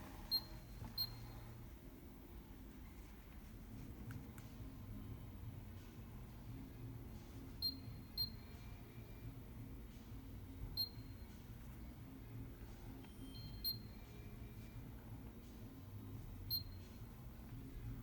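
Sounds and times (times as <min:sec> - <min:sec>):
low steady hum: 0:00.0 - 0:18.0
short high beeps from control panel: 0:00.3 - 0:01.4, 0:07.6 - 0:08.6, 0:10.8 - 0:11.3, 0:13.1 - 0:14.1, 0:16.5 - 0:16.8.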